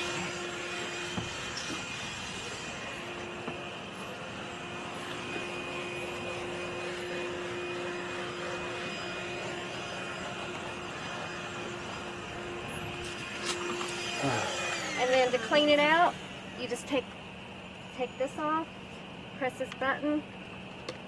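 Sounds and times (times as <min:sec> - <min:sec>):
handheld vacuum running: 0:00.0 - 0:17.3.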